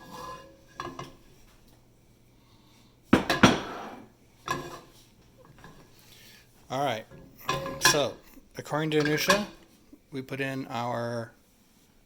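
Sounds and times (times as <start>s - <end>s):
metal cookware clanking: 0.0s - 1.2s, 3.2s - 5.8s, 7.0s - 9.6s.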